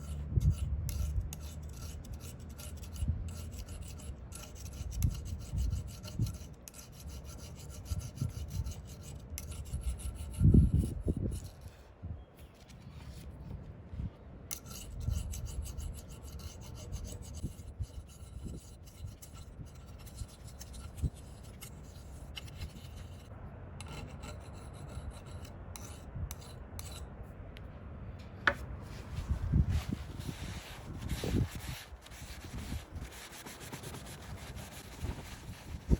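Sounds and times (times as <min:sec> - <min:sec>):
hand tool rasping on steel: 0:00.0 - 0:11.7, 0:14.5 - 0:27.1.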